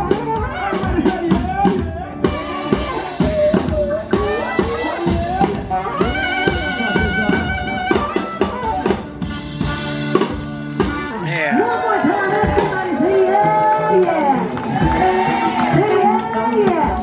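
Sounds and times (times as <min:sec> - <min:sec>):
drum kit beating: 0:00.0 - 0:17.0
live band playing upbeat music: 0:00.0 - 0:17.0.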